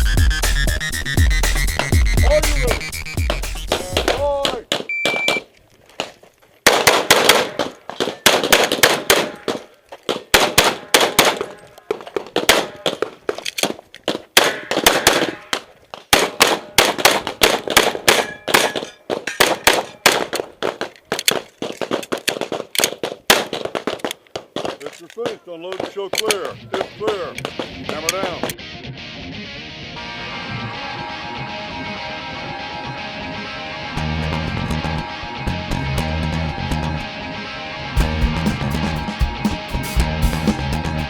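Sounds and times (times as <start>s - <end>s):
shot timer beep: 4.9s - 5.4s
rapid pistol shots: 6.6s - 11.6s, 12.3s - 13.2s, 14.1s - 24.9s
metallic ringing: 18.2s - 20.1s.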